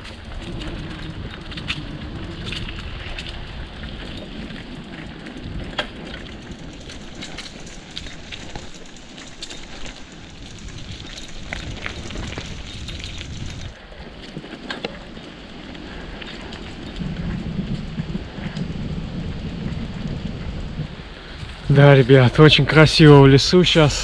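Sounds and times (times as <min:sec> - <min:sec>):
dry leaves and twigs crackling: 0:00.0 - 0:23.9.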